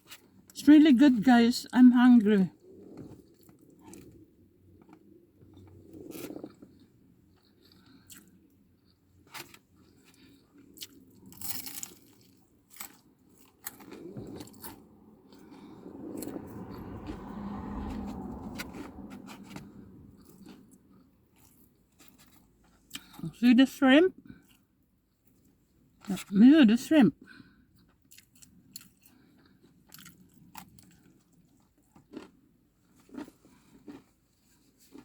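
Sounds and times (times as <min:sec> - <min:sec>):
chewing and crunching fried food: 0:00.0 - 0:26.4, 0:27.1 - 0:35.0
low rumble: 0:13.7 - 0:20.4.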